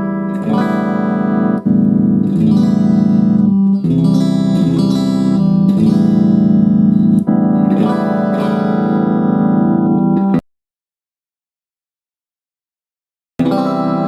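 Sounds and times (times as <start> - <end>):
guitar chords strummed: 0.0 - 10.4, 13.4 - 14.0.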